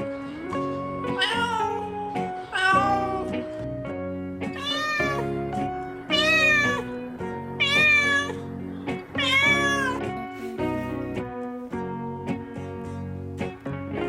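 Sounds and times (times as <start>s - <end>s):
background music: 0.0s - 14.0s
cat meowing: 1.0s - 3.4s, 4.5s - 5.4s, 6.1s - 6.9s, 7.6s - 8.4s, 9.2s - 10.1s.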